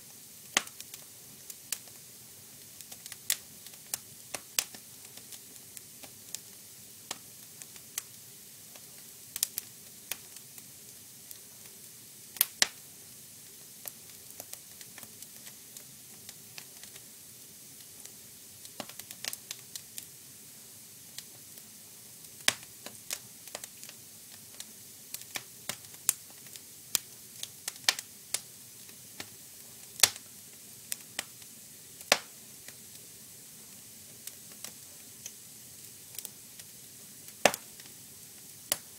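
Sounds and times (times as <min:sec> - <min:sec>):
fire crackling and popping: 0:00.1 - 0:38.9.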